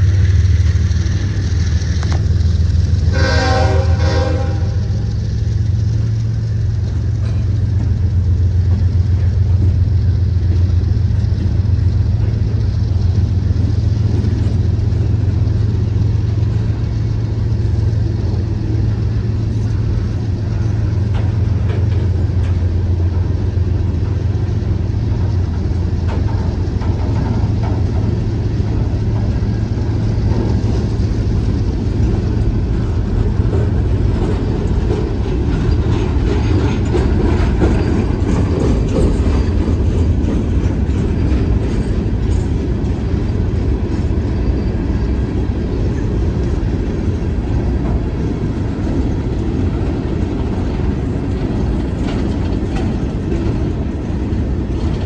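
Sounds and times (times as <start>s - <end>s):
diesel locomotives rumbling past: 0.0s - 55.0s.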